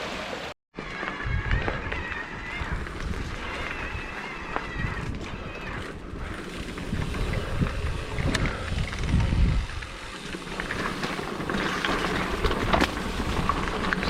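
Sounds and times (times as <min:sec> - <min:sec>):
tyres rumbling on muddy trail: 0:00.0 - 0:14.0
bike clicking and rattling: 0:00.8 - 0:14.0
wind on microphone: 0:01.1 - 0:10.1.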